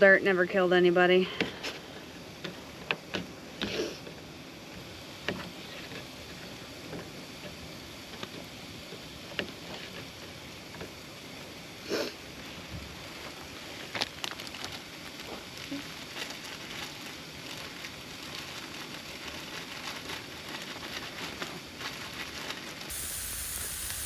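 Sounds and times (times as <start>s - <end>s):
rain pattering: 13.0s - 24.0s.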